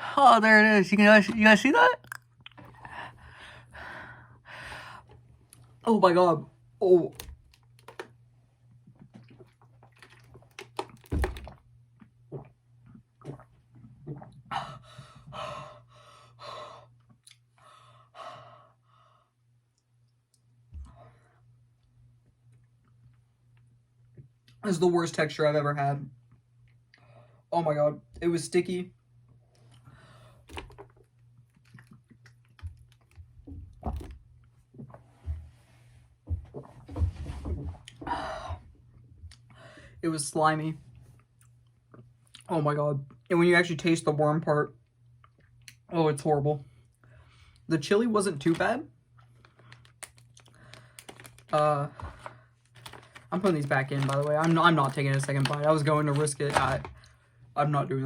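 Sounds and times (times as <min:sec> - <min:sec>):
wet mouth clicks: 0:02.0 - 0:02.7.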